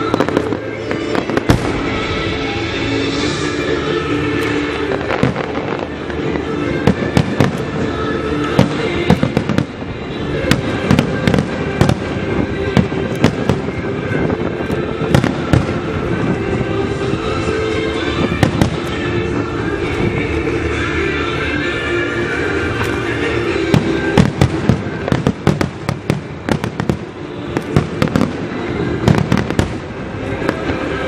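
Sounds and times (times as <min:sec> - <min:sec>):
background music: 0:00.0 - 0:31.0
fireworks bangs and crackles: 0:00.0 - 0:31.0.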